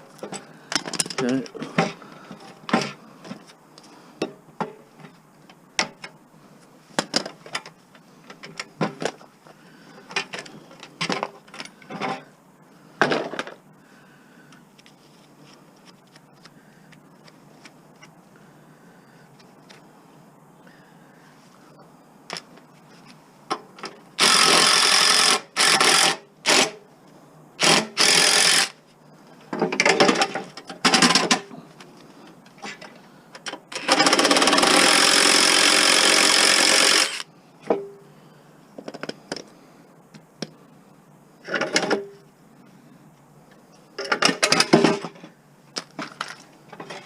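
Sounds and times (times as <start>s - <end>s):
power tool cutting: 24.2s - 26.7s, 27.6s - 28.8s, 33.8s - 37.2s.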